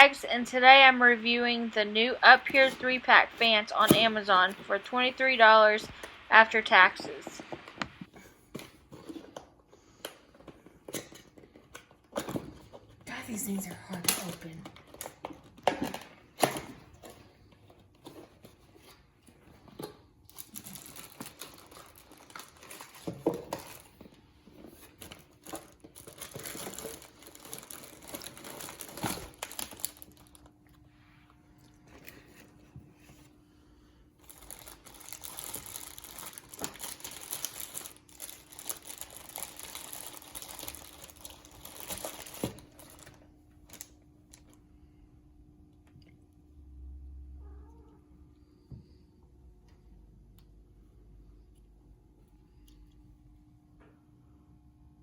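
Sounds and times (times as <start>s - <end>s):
packaging crinkling and rustling: 19.7s - 30.6s, 34.2s - 44.6s.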